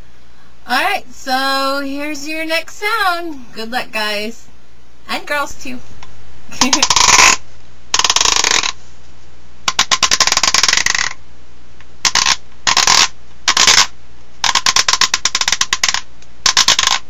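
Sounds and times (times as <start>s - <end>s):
rapid clicking rattle: 8.0s - 8.8s, 9.7s - 11.2s, 12.0s - 17.0s.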